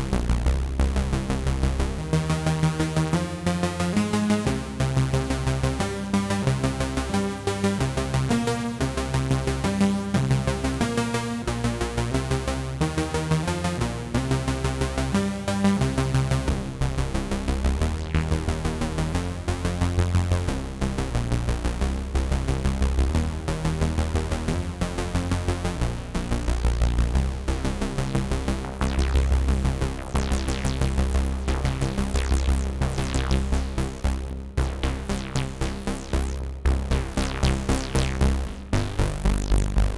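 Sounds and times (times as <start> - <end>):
heavy synth bass line: 0.0 - 39.9
synthesizer sequenced pattern: 0.0 - 39.9.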